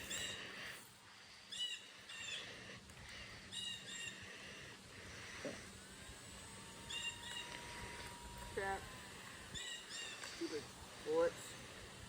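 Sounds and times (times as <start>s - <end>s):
bird chirping: 0.0s - 0.6s, 3.5s - 4.4s, 6.8s - 7.9s, 8.9s - 10.6s
faint steady whine: 0.0s - 12.0s.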